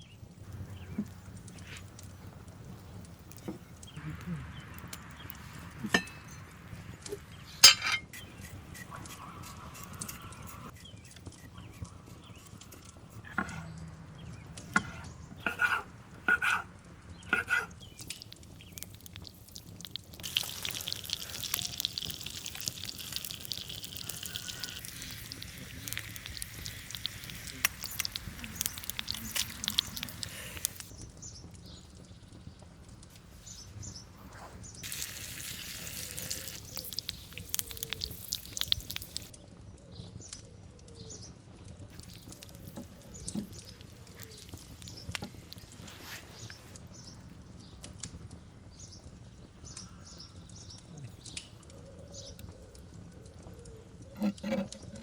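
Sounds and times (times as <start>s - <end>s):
food sizzling in a pan: 17.8s - 30.9s, 34.8s - 39.3s, 42.0s - 46.6s.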